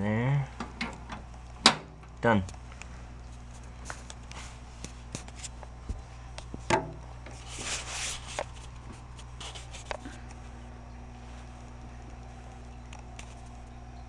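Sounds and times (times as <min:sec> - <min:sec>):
rubbing and rustling: 0:03.3 - 0:10.6.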